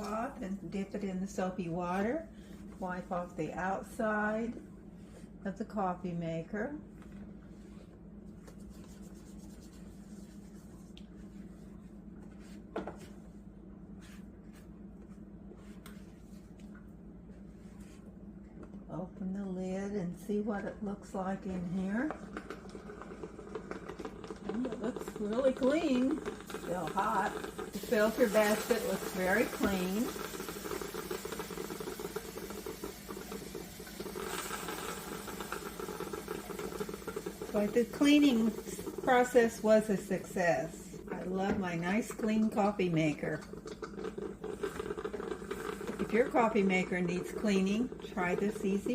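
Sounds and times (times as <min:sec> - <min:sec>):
coffee maker crackling and ticking: 0:00.0 - 0:04.6, 0:20.3 - 0:48.9
steady low hum: 0:00.0 - 0:48.9
damp cloth wiping casing: 0:07.5 - 0:12.6.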